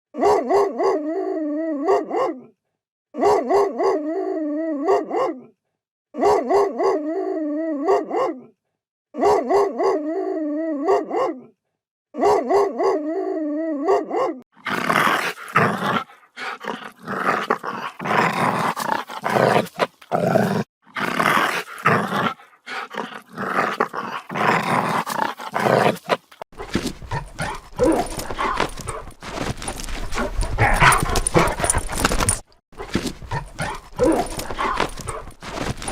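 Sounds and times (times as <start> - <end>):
choppy dog vocalizing: 14.6 - 35.9
wavering dog cry: 27.1 - 32.4.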